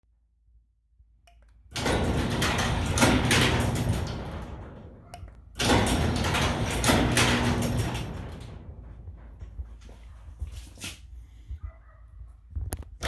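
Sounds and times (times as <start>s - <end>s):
garage door opener motor hum: 1.7s - 9.6s
garage door rattling: 1.7s - 11.0s.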